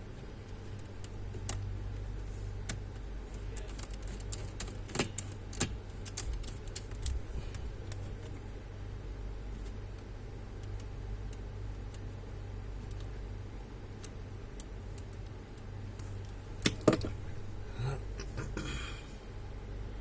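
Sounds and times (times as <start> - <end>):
steady low hum: 0.0 - 20.0
clicks of handling computer parts: 16.6 - 17.2.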